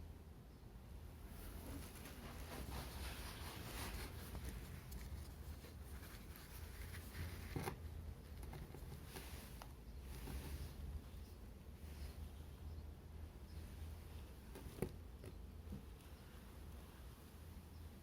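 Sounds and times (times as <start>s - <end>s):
low steady hum: 0.0s - 18.0s
handling rustles and clicks: 1.7s - 10.6s.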